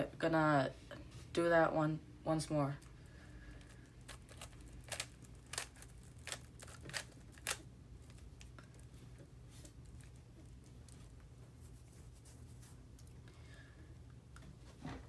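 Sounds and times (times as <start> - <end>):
plastic puzzle cube clicking: 4.3 - 7.6.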